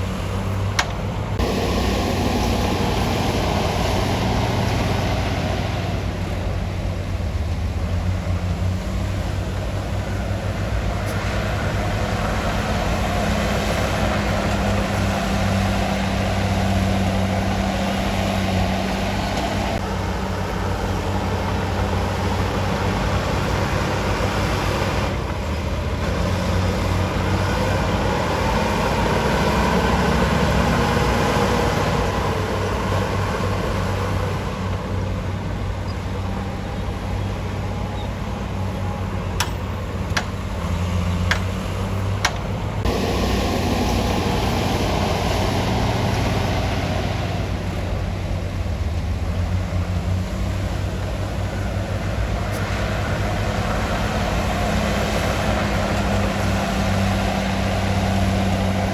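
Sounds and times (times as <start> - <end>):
bulldozer diesel engine running: 0.0 - 58.9
sharp metallic clanks: 39.4 - 40.4.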